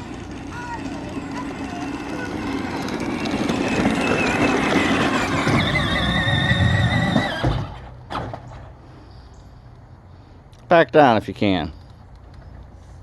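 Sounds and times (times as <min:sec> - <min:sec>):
toy tractor electric motor whine: 0:00.0 - 0:07.9.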